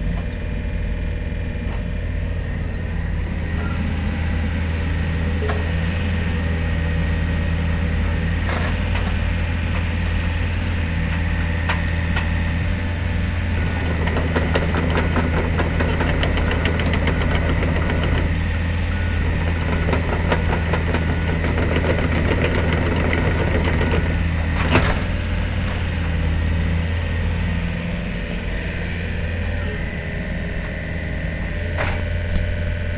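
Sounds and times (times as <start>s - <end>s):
excavator diesel engine running: 0.0s - 32.9s
metallic clanking and rattling: 13.5s - 25.9s.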